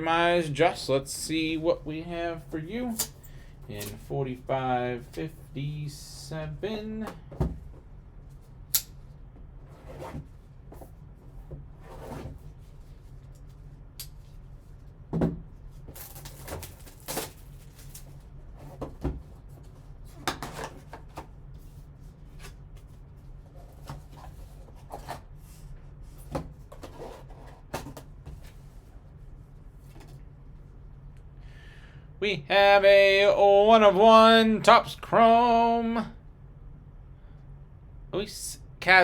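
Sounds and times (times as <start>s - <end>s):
low steady hum: 0.0s - 39.0s
packaging rustling scrapes: 15.9s - 18.3s.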